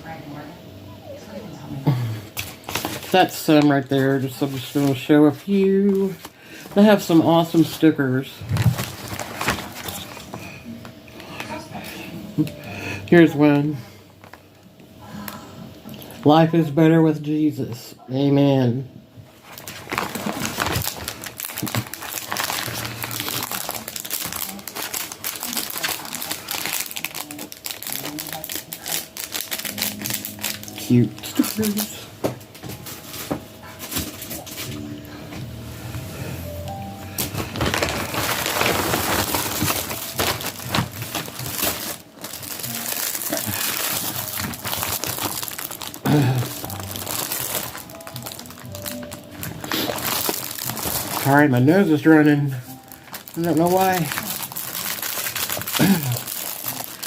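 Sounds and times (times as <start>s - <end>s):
sticker packaging crinkling: 2.4s - 10.6s, 19.4s - 34.7s, 37.2s - 57.0s.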